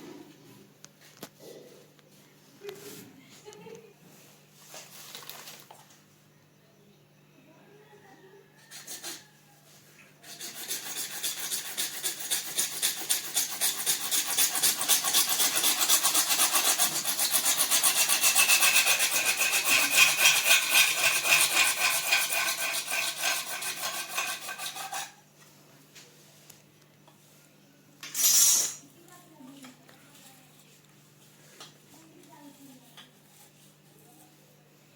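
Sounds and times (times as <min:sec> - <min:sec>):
hand tool rasping plastic pipe: 0:10.2 - 0:25.2.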